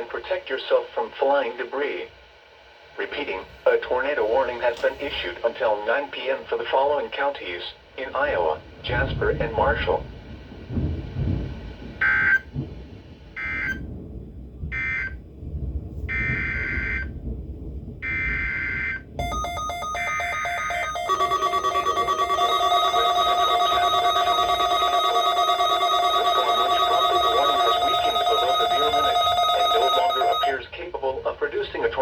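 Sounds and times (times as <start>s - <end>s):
digital data buzzing blasts: 19.2s - 30.6s
steady electronic alert tone: 19.2s - 30.6s.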